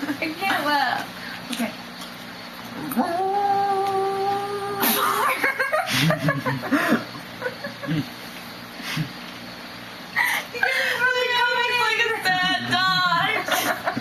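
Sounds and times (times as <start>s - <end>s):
person howling like a dog: 2.8s - 5.3s
person whining and yelping: 2.8s - 5.4s.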